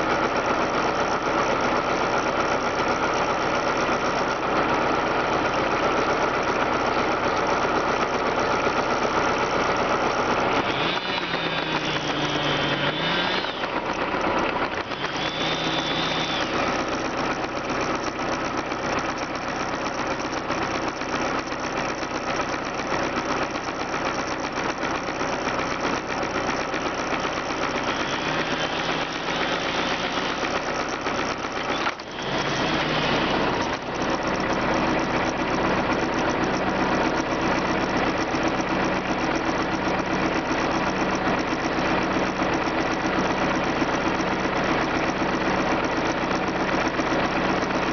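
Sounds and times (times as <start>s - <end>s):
engine running loudly: 0.0s - 47.9s.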